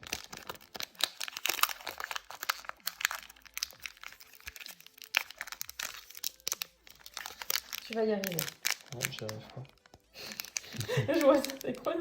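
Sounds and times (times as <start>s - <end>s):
foil wrapper crinkling: 0.0s - 12.0s.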